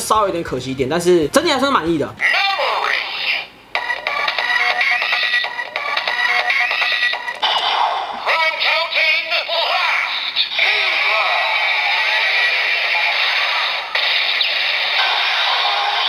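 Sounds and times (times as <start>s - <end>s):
synthesized voice call: 2.2s - 5.5s, 6.3s - 16.0s
toy music: 3.7s - 7.4s.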